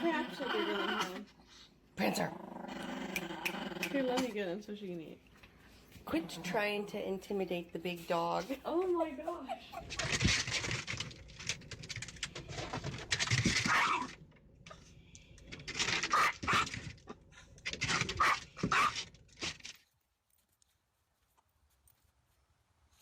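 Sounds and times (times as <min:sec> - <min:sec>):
small dog growling: 0:00.0 - 0:04.4, 0:06.0 - 0:07.2.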